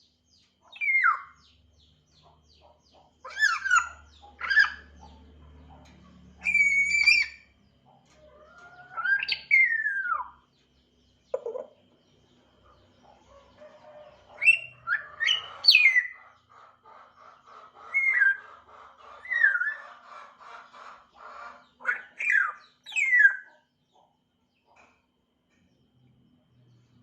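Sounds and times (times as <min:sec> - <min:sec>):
parrot chattering: 0:11.4 - 0:11.8.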